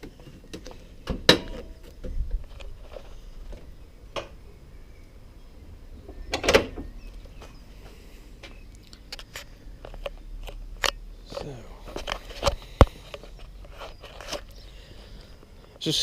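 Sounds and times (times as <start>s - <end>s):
sharp knocks and clunks: 0.0s - 2.4s
faint low rumble: 1.7s - 15.7s.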